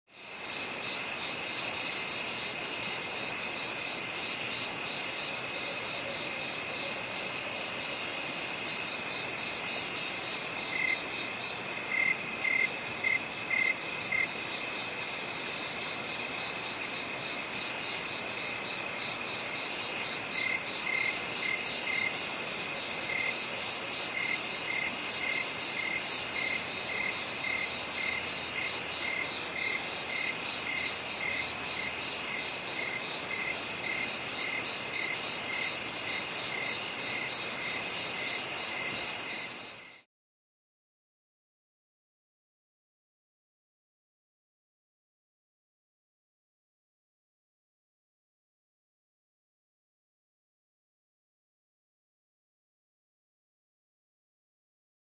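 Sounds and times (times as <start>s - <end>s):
crickets and insects trilling: 0.1s - 40.0s
insect chirping: 0.1s - 40.0s.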